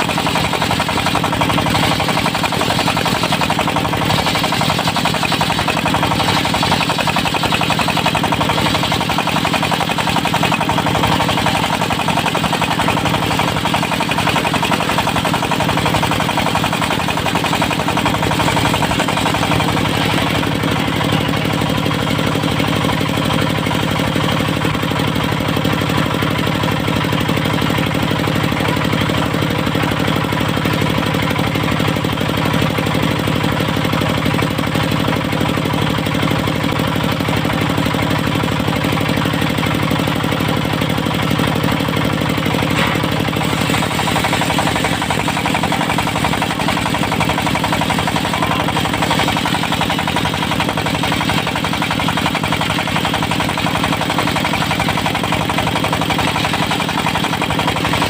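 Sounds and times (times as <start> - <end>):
diesel engine running: 0.0 - 58.0.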